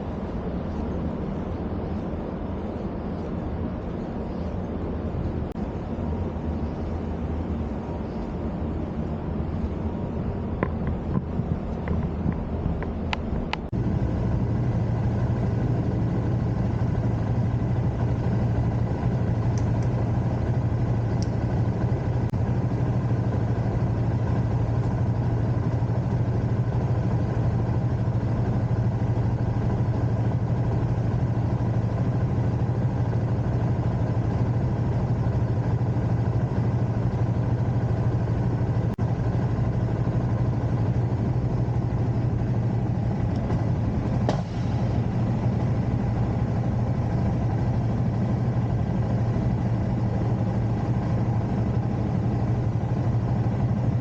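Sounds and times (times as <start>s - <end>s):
motorcycle engine idling: 11.9s - 54.0s.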